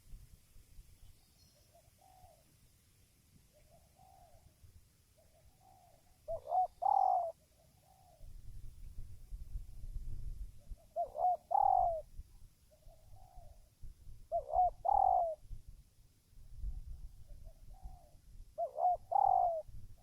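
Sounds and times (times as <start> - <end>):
dove cooing: 1.7 - 2.5, 3.5 - 4.6, 5.2 - 8.3, 10.7 - 12.1, 14.3 - 15.5, 17.3 - 19.7.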